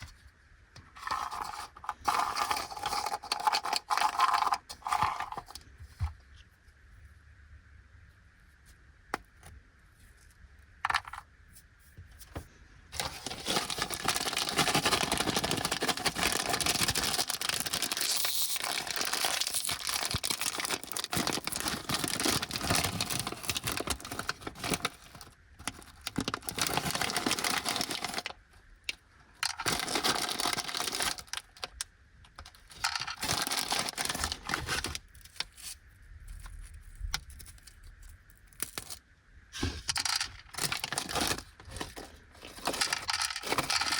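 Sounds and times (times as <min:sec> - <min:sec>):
plastic wrapper crinkling: 0:01.0 - 0:05.6, 0:13.0 - 0:28.4, 0:29.4 - 0:31.8, 0:32.4 - 0:35.8, 0:39.9 - 0:43.9
wrapper being torn open: 0:13.0 - 0:28.3, 0:29.6 - 0:31.6, 0:33.1 - 0:35.8.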